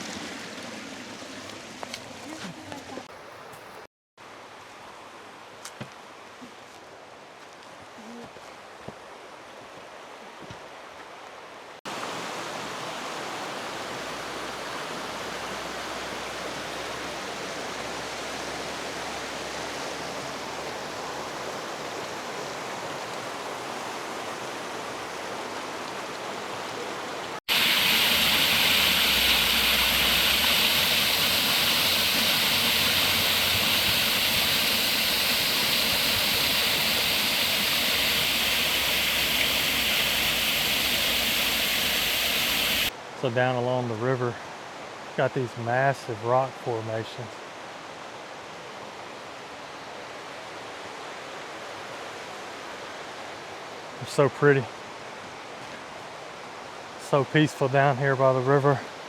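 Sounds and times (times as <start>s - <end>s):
river water rushing: 11.5s - 43.2s.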